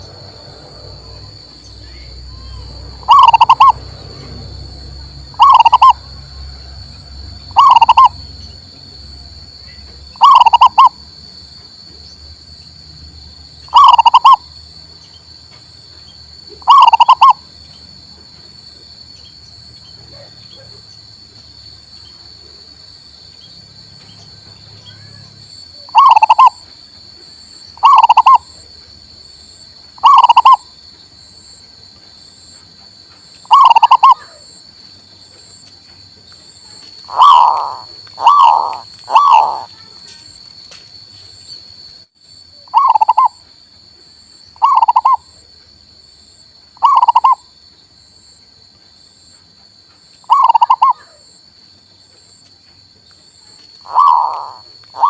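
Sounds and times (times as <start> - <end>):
dove cooing: 3.0 - 3.8, 5.3 - 6.0, 7.5 - 8.1, 10.2 - 10.9, 13.7 - 14.4, 16.6 - 17.4, 25.9 - 26.6, 27.8 - 28.4, 30.0 - 30.6, 33.5 - 34.4, 37.1 - 39.7, 42.7 - 43.3, 44.6 - 45.2, 46.8 - 47.4, 50.3 - 51.1, 53.8 - 55.0.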